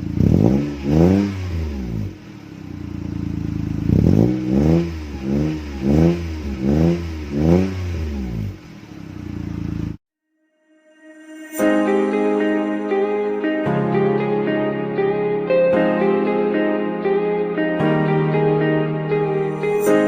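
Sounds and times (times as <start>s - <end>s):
car engine idling: 0.0s - 10.0s
car engine throttle blips: 0.0s - 10.0s.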